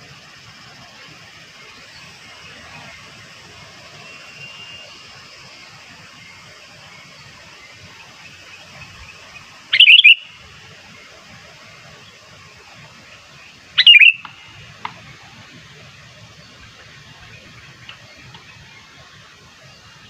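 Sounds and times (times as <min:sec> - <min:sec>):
steady high hiss: 0:00.0 - 0:20.0
faint bird chirp: 0:03.9 - 0:11.2, 0:13.1 - 0:20.0
bird bubbling calls: 0:09.2 - 0:10.4, 0:13.8 - 0:15.4.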